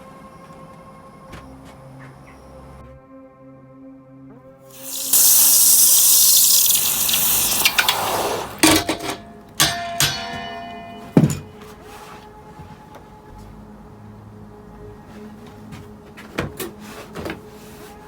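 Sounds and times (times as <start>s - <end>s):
running water rushing: 4.8s - 9.0s.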